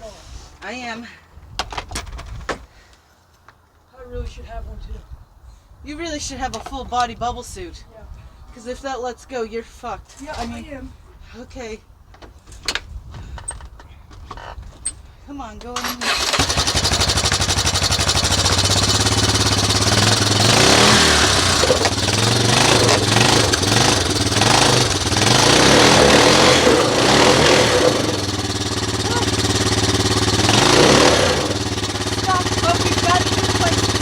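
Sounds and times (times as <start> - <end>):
atv engine revving under load: 15.8 - 34.0.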